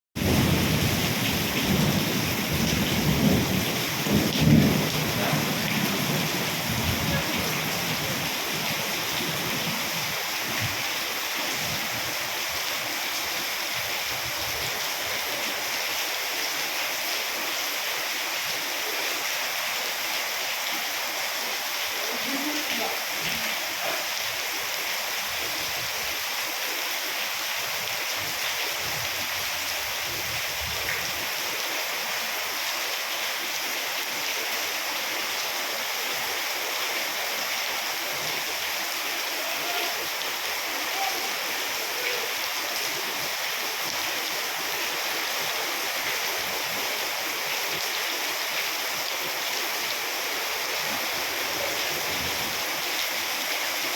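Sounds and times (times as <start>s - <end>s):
waterfall rushing: 4.7s - 9.2s, 14.7s - 25.6s, 37.3s - 53.9s.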